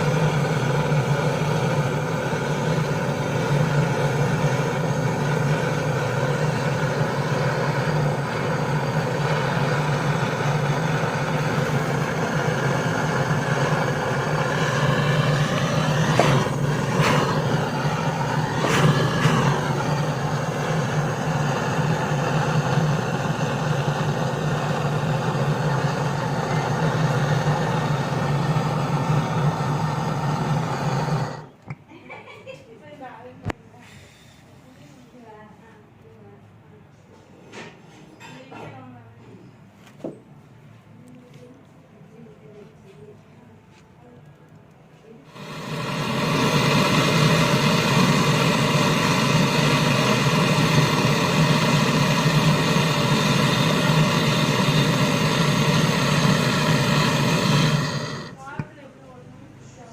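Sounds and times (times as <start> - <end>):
machine motor humming: 0.0 - 31.7, 45.3 - 58.8
short whine rising and falling: 0.0 - 31.7, 45.3 - 58.6.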